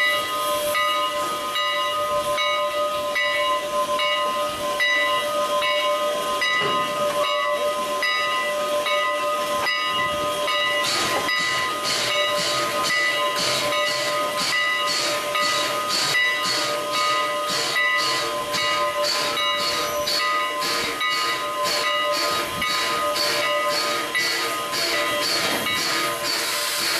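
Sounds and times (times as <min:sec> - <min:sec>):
steam locomotive chuffing: 0:00.0 - 0:26.9
steady hissing: 0:10.4 - 0:26.9.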